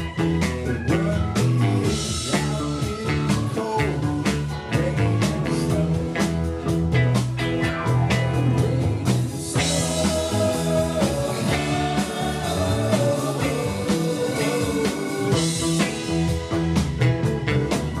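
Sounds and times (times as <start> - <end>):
rock band playing: 0.0 - 18.0.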